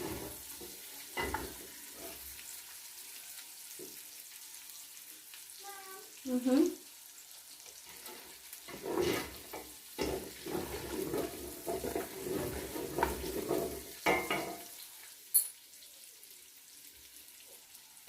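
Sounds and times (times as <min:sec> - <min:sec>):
food frying in oil: 0:00.0 - 0:18.0
spoon scraping pot: 0:08.0 - 0:14.5.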